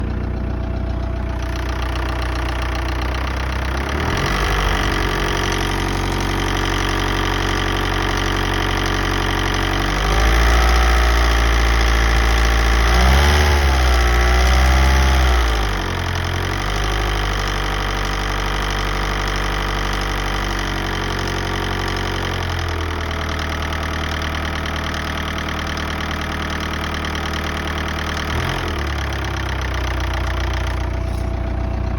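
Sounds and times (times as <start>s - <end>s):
engine noise: 0.0s - 18.8s, 26.8s - 31.9s
diesel engine idling and revving: 0.0s - 31.9s.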